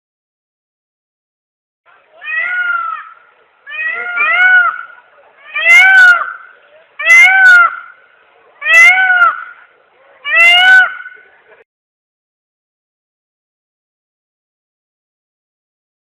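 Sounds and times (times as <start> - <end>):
peacock wailing calls: 2.2 - 8.0, 8.6 - 11.4.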